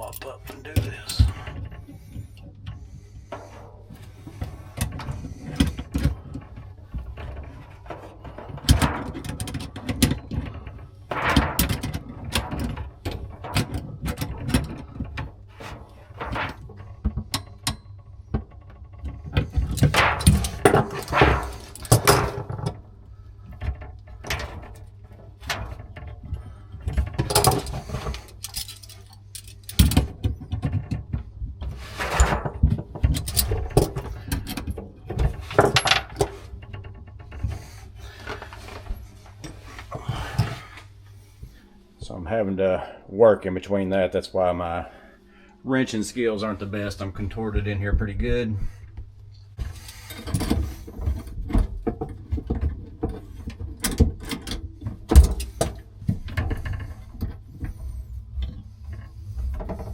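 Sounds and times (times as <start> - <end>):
hand tools clinking on metal: 0.0 - 1.4.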